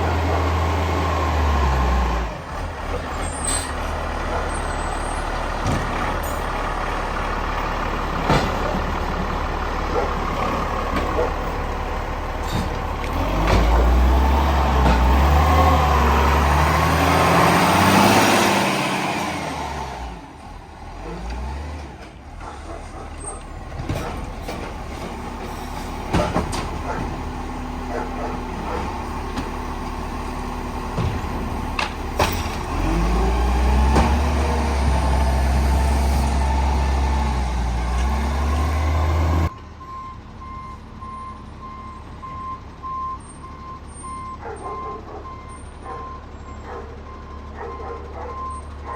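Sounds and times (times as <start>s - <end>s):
truck engine revving: 0.0s - 39.5s
sharp knocks and bangs: 26.0s - 27.3s.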